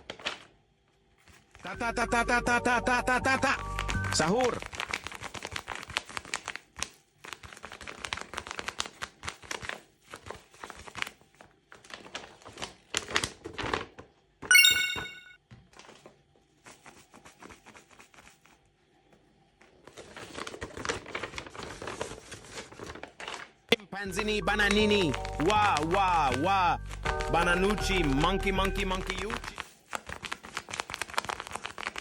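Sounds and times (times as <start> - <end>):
paper and tape crinkling: 0.0 - 1.7, 3.4 - 14.1, 19.6 - 32.0
short bright chime: 14.5 - 15.4.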